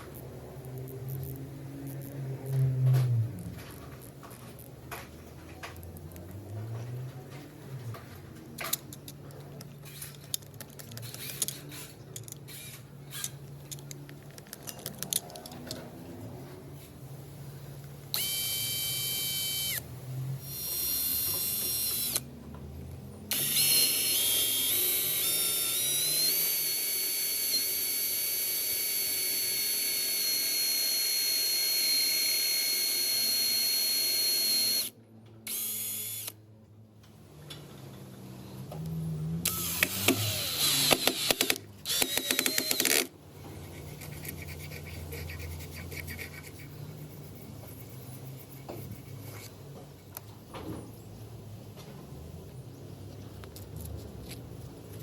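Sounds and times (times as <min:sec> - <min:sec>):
drill rattling: 0:11.0 - 0:13.4, 0:18.2 - 0:19.8, 0:20.5 - 0:22.2, 0:23.3 - 0:34.9, 0:35.5 - 0:36.3, 0:39.5 - 0:43.1
electric drill whining: 0:18.1 - 0:19.8, 0:20.4 - 0:22.3, 0:23.3 - 0:36.4, 0:39.4 - 0:43.1.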